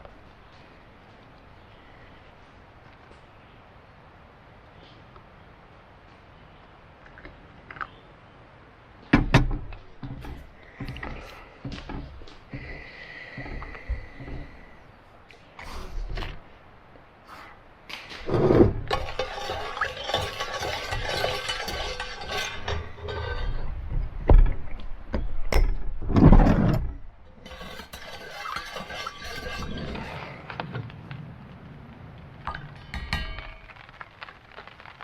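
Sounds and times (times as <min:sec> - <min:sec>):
dishes clattering: 0:18.1 - 0:24.1, 0:27.3 - 0:30.3, 0:32.5 - 0:33.9
dishes and utensils clinking: 0:18.3 - 0:23.7, 0:27.4 - 0:30.3, 0:32.6 - 0:33.9.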